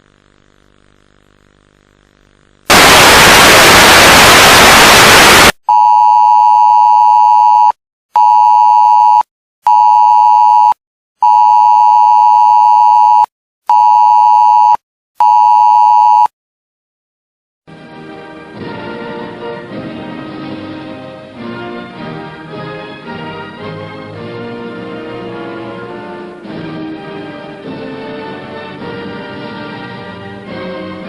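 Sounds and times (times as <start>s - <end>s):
static hiss: 0.0s - 5.6s.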